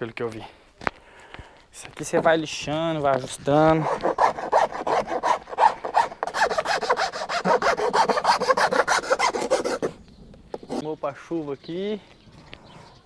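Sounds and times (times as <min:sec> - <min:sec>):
sanding strokes on wood panel: 0:03.7 - 0:10.0.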